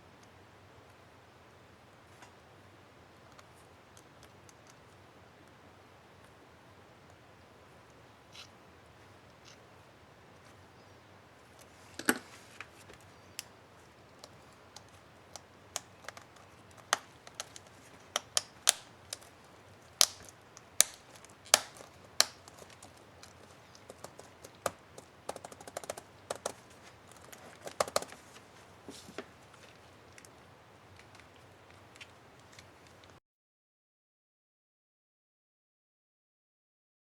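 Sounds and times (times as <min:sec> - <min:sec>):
laptop key cap clicks: 0:20.0 - 0:28.1.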